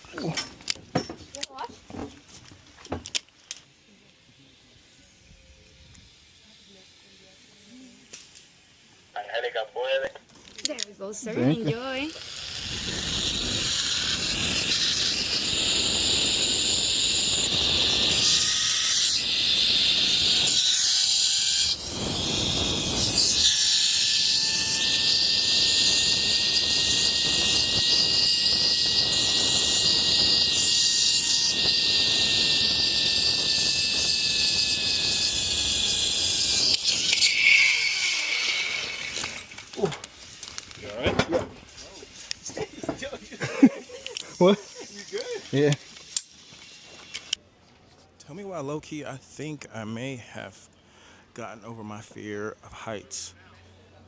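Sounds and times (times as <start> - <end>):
zipline trolley whine on cable: 3.1 - 8.9, 11.6 - 40.9.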